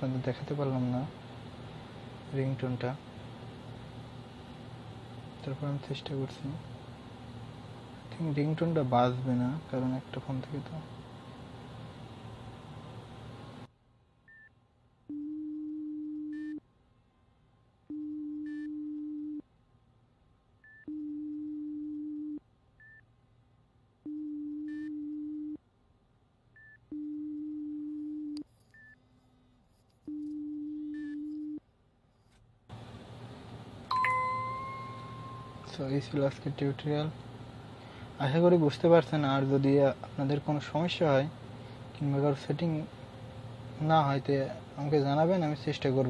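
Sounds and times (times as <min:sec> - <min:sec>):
phone ringback tone: 0:33.9 - 0:35.7.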